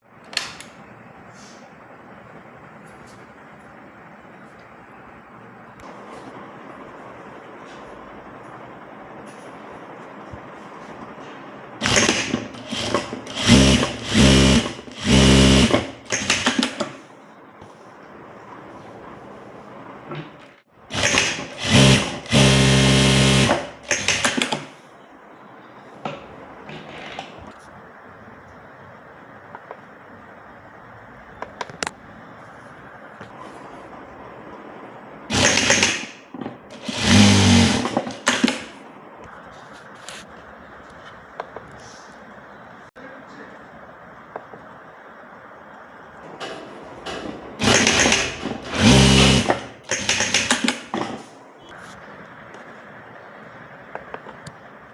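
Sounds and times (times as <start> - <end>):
sewing machine stitching: 11.8 - 17.0, 20.9 - 24.8, 35.3 - 38.8, 46.4 - 51.3.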